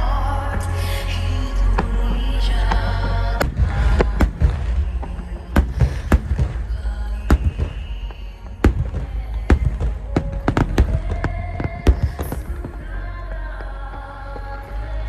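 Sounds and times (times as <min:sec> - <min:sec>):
low rumble: 0:00.0 - 0:15.0
fireworks bangs: 0:03.4 - 0:13.4.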